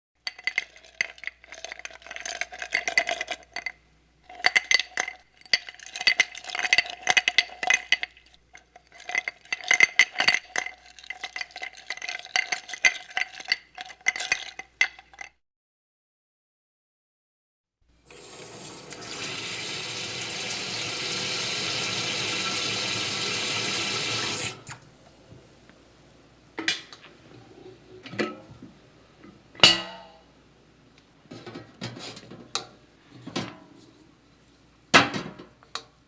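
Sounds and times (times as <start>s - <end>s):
dishes clinking and rattling: 0.2s - 15.3s.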